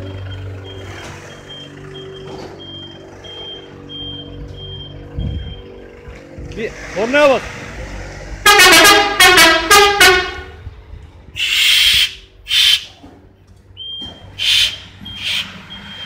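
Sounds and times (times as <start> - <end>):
vehicle air horn blasts: 8.4 - 10.7.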